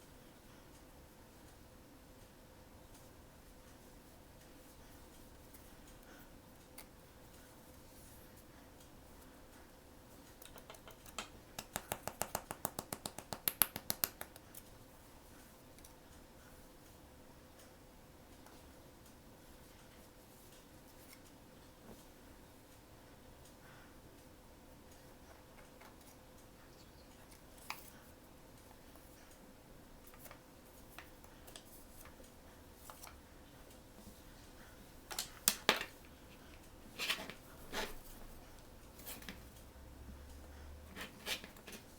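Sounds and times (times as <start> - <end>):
faint steady hum: 0.0 - 41.9.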